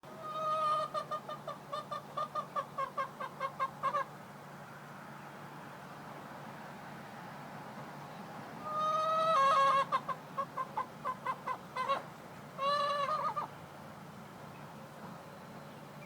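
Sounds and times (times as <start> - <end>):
hen calling and clucking: 0.1 - 4.2, 8.6 - 13.6.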